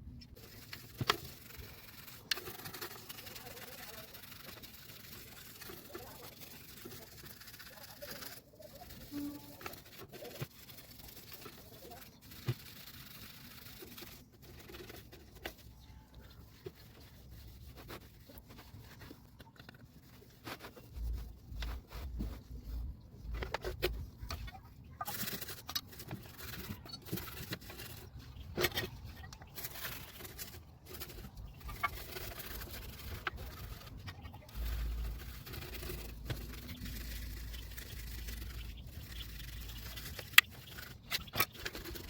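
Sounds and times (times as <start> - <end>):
brush scrubbing: 0.0 - 42.0.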